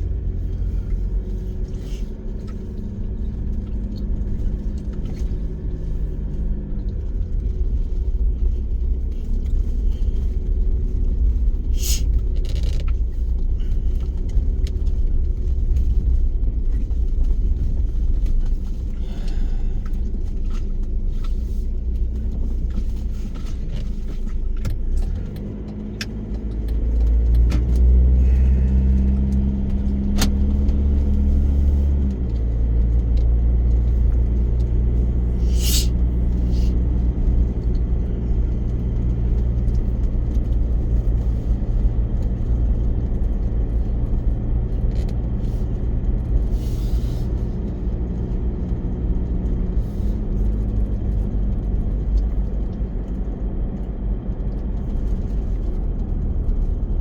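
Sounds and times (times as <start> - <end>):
car engine and road rumble: 0.0 - 57.0.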